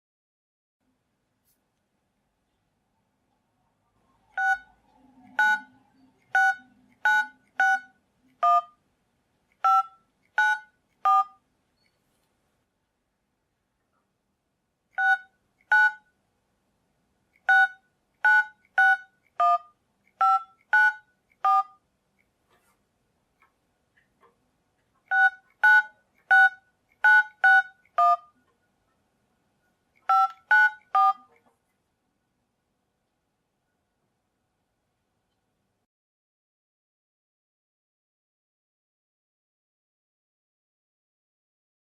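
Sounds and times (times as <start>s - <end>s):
phone keypad beeps: 4.4s - 4.7s, 5.3s - 8.8s, 9.6s - 11.4s, 15.0s - 16.1s, 17.4s - 21.8s, 25.1s - 28.4s, 30.0s - 31.4s.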